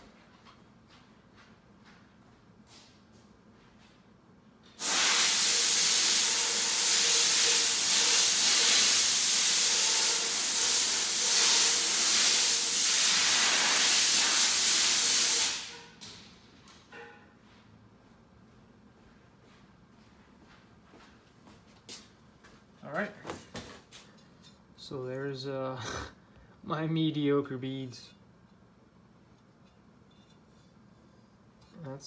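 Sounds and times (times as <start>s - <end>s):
compressed air hissing: 4.8s - 15.9s.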